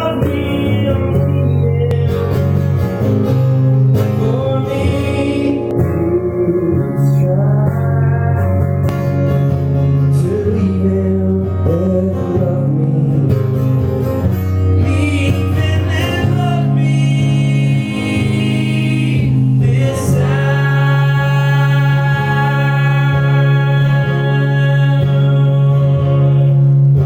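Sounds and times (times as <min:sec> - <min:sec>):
man singing: 0:00.0 - 0:02.6, 0:04.0 - 0:08.9, 0:10.0 - 0:13.6, 0:14.7 - 0:27.0.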